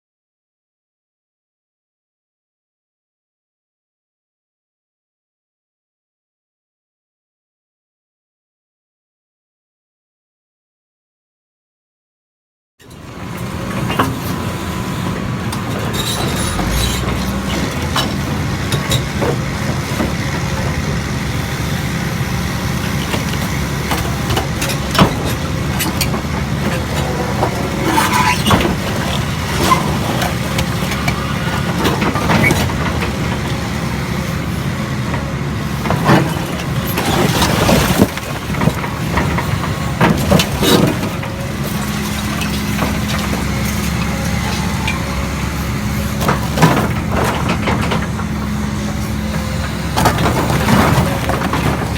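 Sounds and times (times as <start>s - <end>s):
power unit engine drone: 13.0s - 51.9s.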